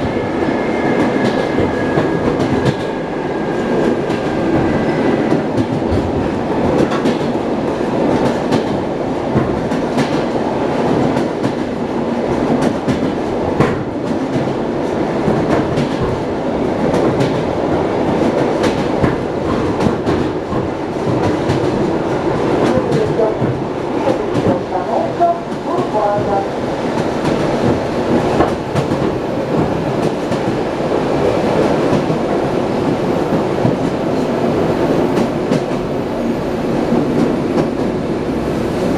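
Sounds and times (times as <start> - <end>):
steady train rumble: 0.0 - 38.9
train wheels clattering over rail joints: 3.6 - 24.7, 25.5 - 34.3.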